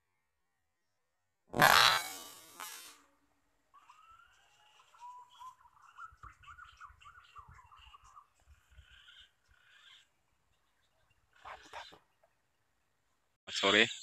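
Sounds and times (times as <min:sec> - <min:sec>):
birdsong: 0:03.6 - 0:14.0.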